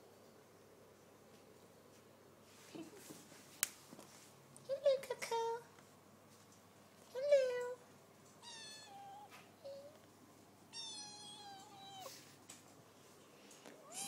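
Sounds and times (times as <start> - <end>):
cat meowing: 8.4 - 10.0, 10.7 - 12.2.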